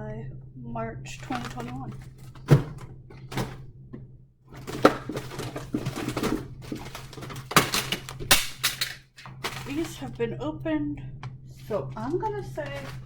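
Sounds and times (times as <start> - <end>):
food packages rustling: 1.2 - 3.6, 4.5 - 10.2, 11.6 - 13.0
containers knocking and clattering: 1.2 - 10.2, 12.0 - 13.0.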